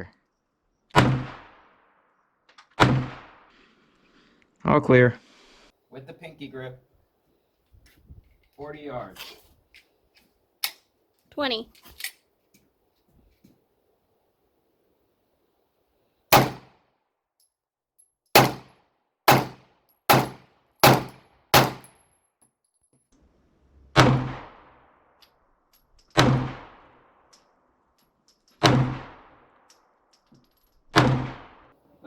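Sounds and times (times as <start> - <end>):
handgun shots: 16.3 - 16.7, 18.4 - 22.0.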